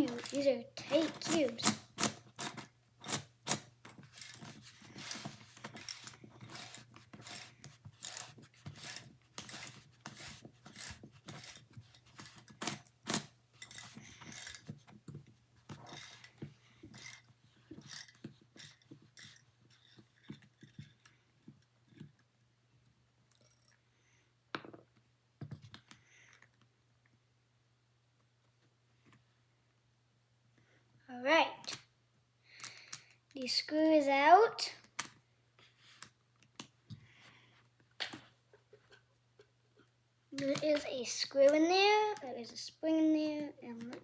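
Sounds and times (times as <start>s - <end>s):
screwdriver clicking and scraping plastic: 0.0s - 22.3s, 40.4s - 42.2s.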